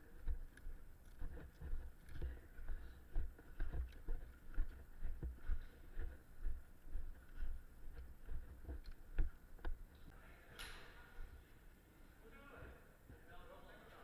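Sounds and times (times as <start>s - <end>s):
clothing and gear rustling: 0.0s - 10.1s
footsteps: 0.0s - 11.5s.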